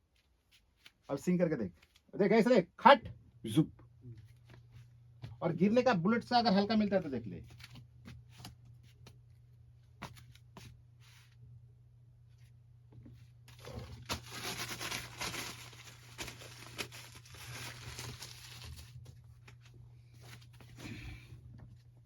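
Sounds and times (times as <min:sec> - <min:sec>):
packaging crinkling and rustling: 0:13.5 - 0:20.6.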